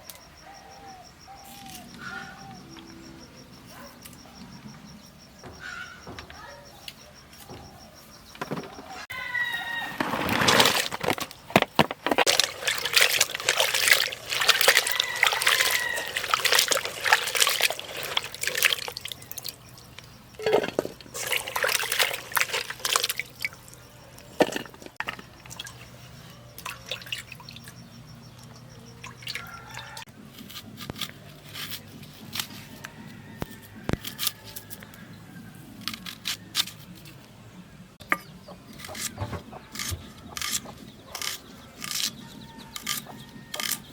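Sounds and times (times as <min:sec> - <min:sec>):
water splashing in a vessel: 0:10.2 - 0:30.0.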